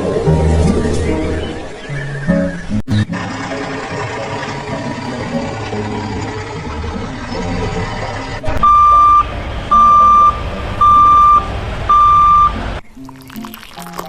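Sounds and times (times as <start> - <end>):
music: 0.0 - 14.0
truck engine running: 2.9 - 12.8
reversing alarm beeping: 8.6 - 12.6.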